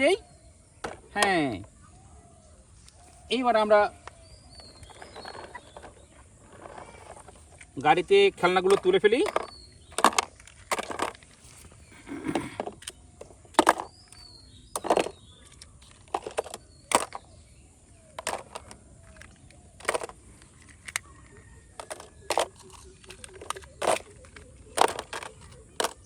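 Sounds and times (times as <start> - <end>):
plastic toys clacking: 4.7 - 17.3, 18.1 - 26.0.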